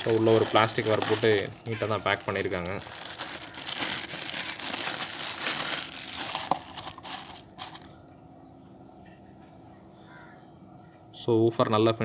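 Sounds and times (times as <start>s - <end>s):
plastic cover crinkling: 0.0s - 8.0s.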